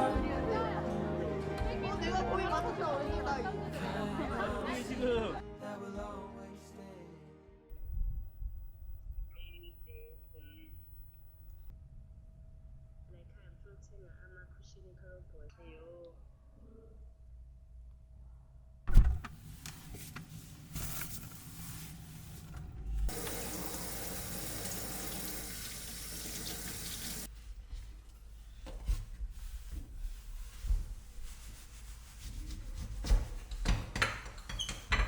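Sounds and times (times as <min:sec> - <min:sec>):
running water: 0:23.1 - 0:27.3.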